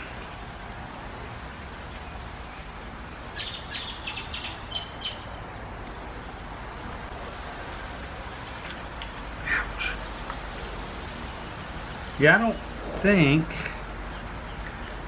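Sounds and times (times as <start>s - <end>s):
steady background hiss: 0.0s - 15.0s
bird chirping: 1.9s - 5.4s.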